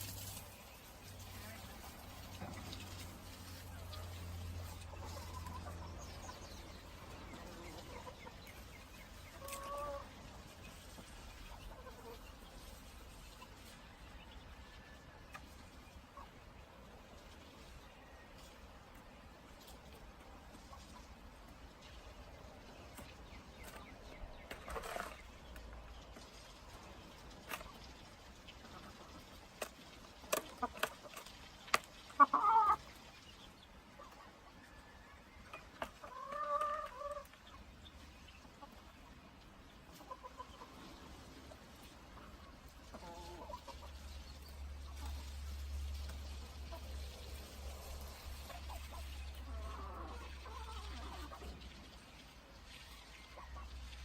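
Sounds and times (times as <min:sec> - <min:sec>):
chickens clucking: 0:00.0 - 0:54.0.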